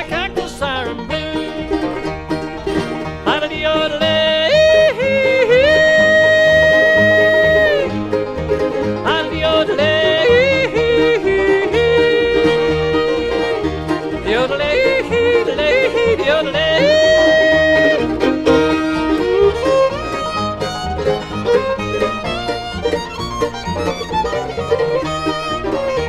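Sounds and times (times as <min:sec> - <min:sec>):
banjo: 0:00.0 - 0:26.0
fiddle melody: 0:00.0 - 0:26.0
guitar: 0:00.0 - 0:26.0
upright bass pulsing: 0:00.0 - 0:26.0.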